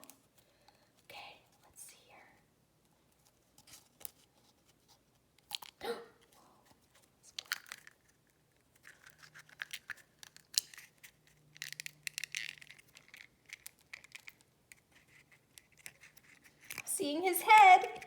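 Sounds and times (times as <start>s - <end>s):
fingernails scratching toy eggshell: 6.9s - 18.0s.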